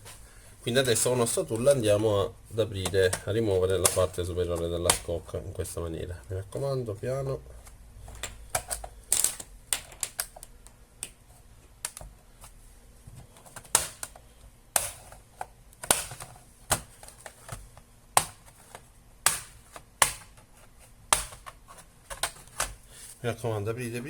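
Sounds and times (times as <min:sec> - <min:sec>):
plastic clips popping loose: 0:08.1 - 0:11.2.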